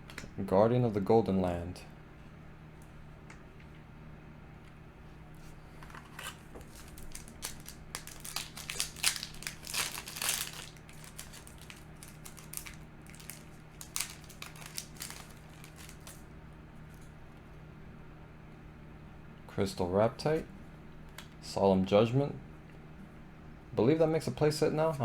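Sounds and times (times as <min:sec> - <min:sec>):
foil wrapper crinkling: 0:05.9 - 0:16.2.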